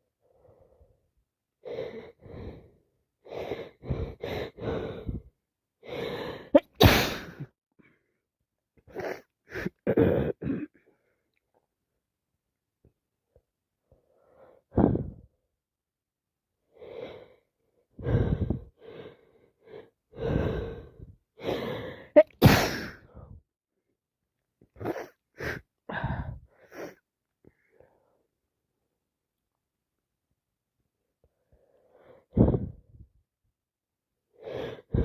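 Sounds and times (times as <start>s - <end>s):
woman sneezing: 6.6s - 7.4s, 22.2s - 23.0s.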